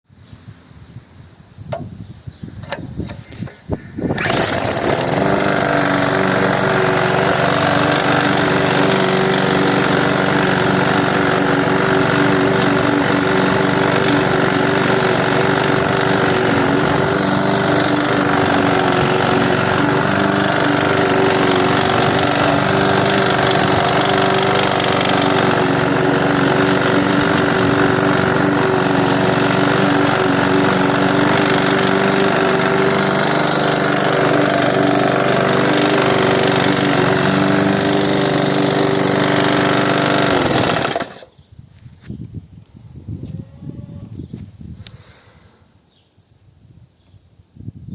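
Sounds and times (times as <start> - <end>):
lawn mower motor running: 4.1 - 41.3.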